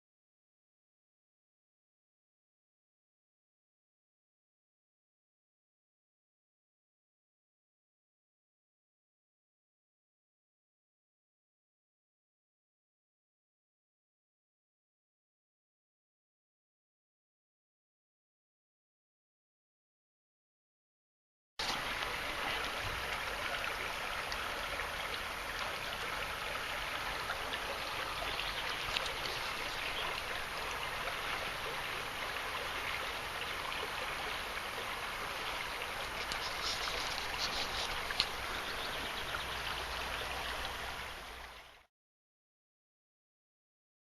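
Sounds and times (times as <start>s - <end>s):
stream water rushing: 21.6s - 41.9s.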